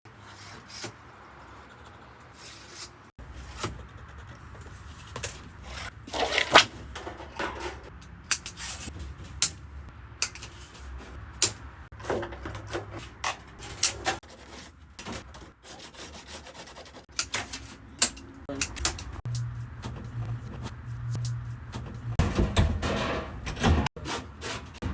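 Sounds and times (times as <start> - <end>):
sheet metal knocking and scraping: 21.7 - 24.9.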